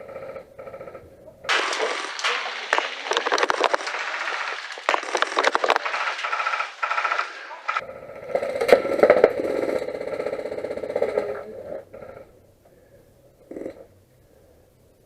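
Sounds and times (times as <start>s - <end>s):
voices: 0.0s - 15.0s
airsoft guns firing bursts: 1.5s - 11.4s.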